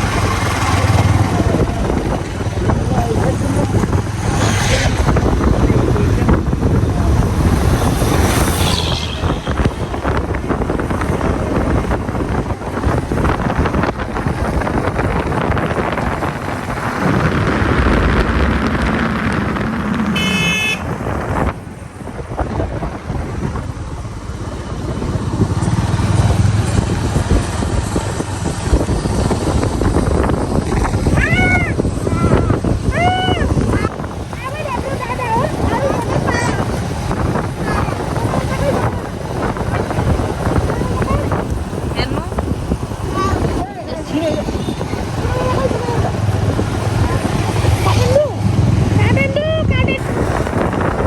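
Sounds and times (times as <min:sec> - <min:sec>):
vehicle engine and road rumble: 0:00.0 - 0:51.0
short horn toot: 0:20.0 - 0:21.0.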